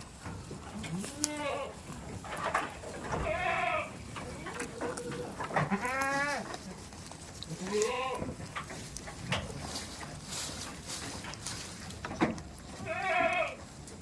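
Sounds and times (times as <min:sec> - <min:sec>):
goats bleating: 0:00.8 - 0:01.8, 0:03.1 - 0:06.8, 0:07.5 - 0:08.4, 0:12.7 - 0:13.6
knocks and rustling: 0:01.8 - 0:07.4, 0:08.1 - 0:12.8.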